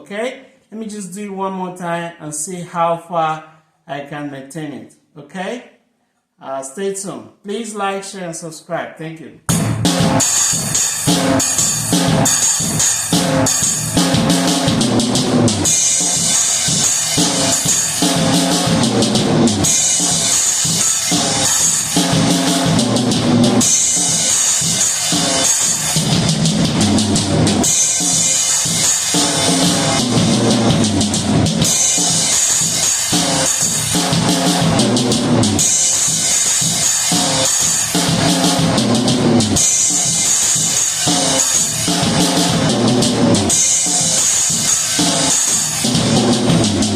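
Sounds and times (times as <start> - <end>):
bass drum and snare beat: 9.5 - 46.9.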